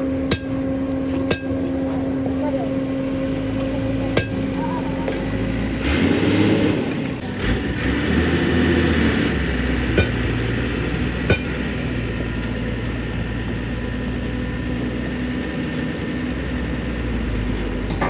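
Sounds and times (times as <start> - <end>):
low mechanical hum: 0.0 - 18.0
sharp metallic strikes: 9.8 - 10.6, 11.2 - 11.7.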